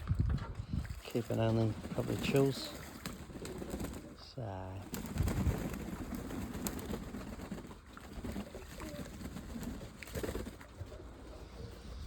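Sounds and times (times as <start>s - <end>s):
pigeons cooing: 4.9s - 12.0s.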